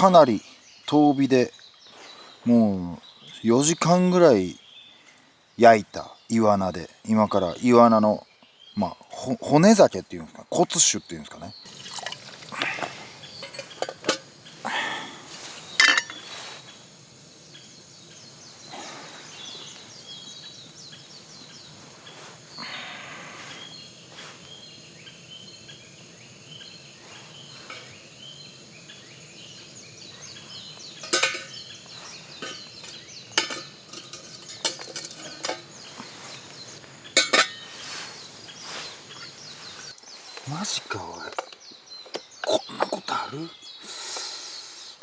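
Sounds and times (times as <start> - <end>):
cookware clinking and knocking: 11.7 - 14.3, 15.8 - 16.2, 27.7 - 28.0, 31.0 - 31.7, 32.3 - 35.8, 37.2 - 37.7.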